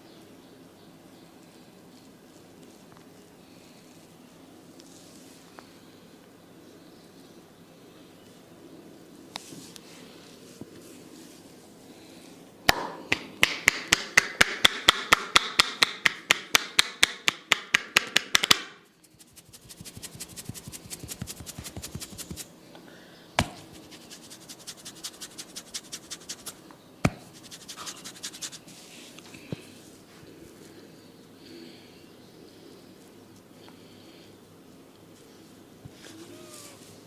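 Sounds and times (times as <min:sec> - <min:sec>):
hands tapping on head: 0:12.7 - 0:18.8, 0:19.6 - 0:22.4, 0:23.4 - 0:28.6.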